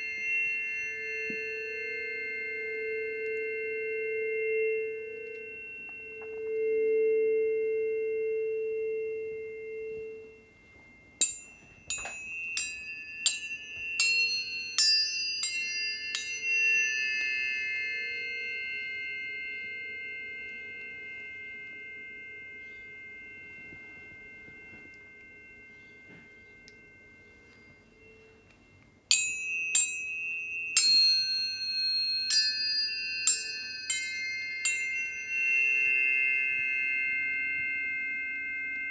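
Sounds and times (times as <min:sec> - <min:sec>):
held low tone: 0:00.0 - 0:38.9
tuning forks ringing: 0:00.0 - 0:38.9
bright metallic strikes: 0:10.7 - 0:38.9.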